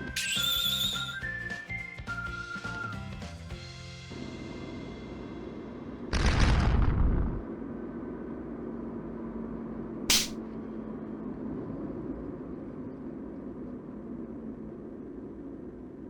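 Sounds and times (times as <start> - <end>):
faint hum: 3.6 - 16.0
low background rumble: 3.6 - 16.0
short sharp hiss: 10.1 - 10.4.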